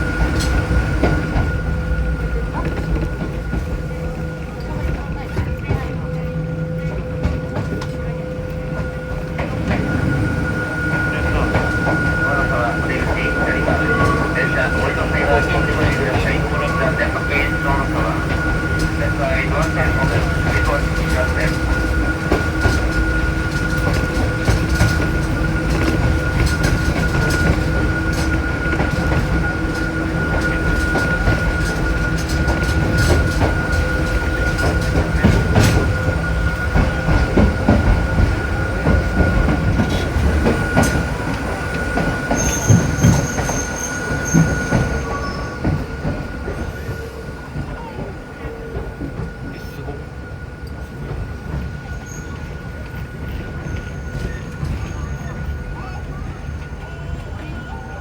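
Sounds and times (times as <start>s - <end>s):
train motor whine: 0.0s - 47.8s
rumbling wheel noise: 0.0s - 58.0s
high wheel squeal: 39.2s - 47.2s.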